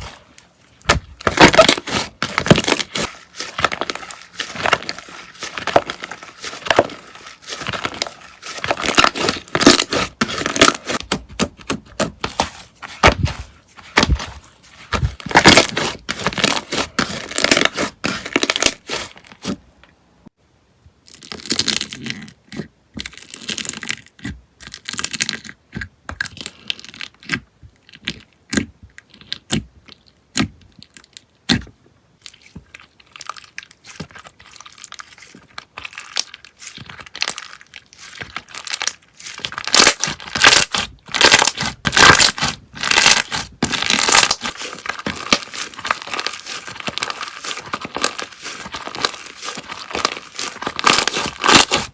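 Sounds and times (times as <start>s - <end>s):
slime crackling and popping: 0.8s - 13.3s, 32.3s - 51.9s.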